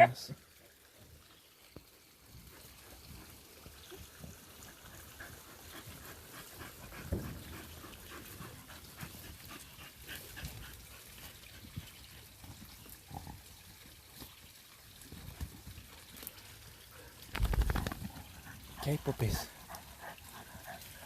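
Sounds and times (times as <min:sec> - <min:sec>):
dogs scrabbling at burrow: 0:15.0 - 0:21.0.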